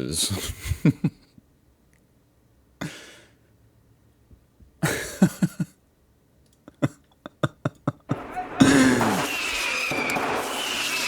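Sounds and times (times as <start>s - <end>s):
sharp bangs: 8.1s - 11.0s
man coughing: 8.6s - 9.2s.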